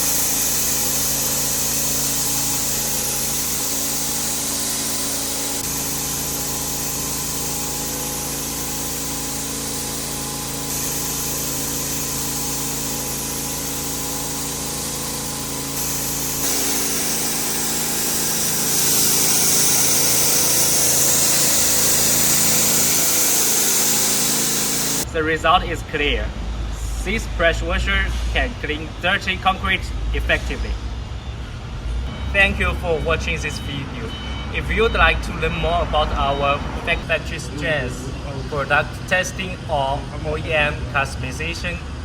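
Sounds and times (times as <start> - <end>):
pressure washer motor humming: 0.0 - 25.1
water jet hissing on concrete: 0.0 - 25.1.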